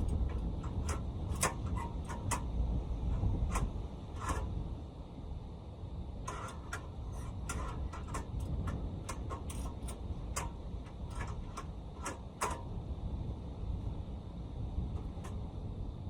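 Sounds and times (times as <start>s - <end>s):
light clicks and clacks: 0.0s - 4.5s, 6.3s - 12.8s.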